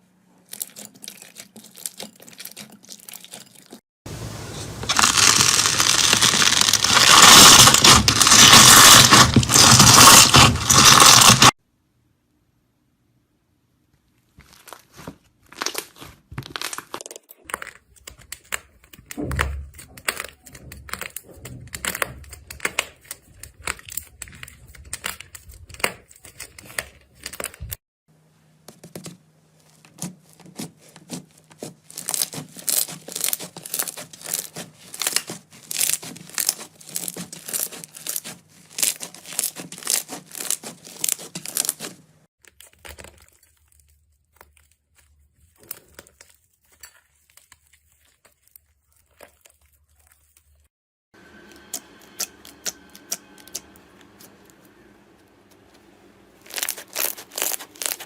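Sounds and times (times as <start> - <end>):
slime crackling and popping: 4.8 - 11.6, 14.4 - 27.7, 31.6 - 50.6, 56.4 - 58.0.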